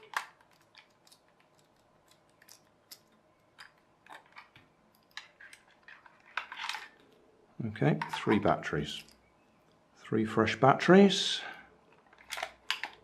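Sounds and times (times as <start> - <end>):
plastic clicks and rattles: 0.0 - 7.2, 8.0 - 9.1, 11.9 - 13.0.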